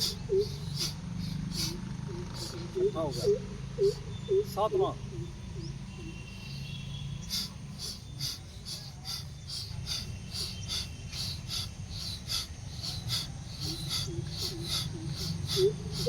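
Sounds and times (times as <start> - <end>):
forceful breaths through nose: 0.0 - 2.6, 6.5 - 16.0.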